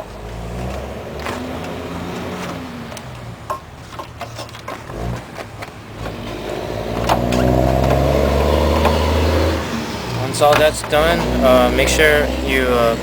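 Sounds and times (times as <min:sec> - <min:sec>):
car engine running: 0:05.8 - 0:13.0.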